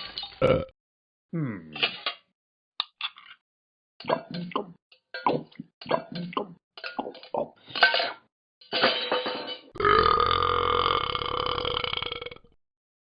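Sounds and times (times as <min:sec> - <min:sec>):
burp: 0:00.4 - 0:00.8, 0:09.8 - 0:12.6.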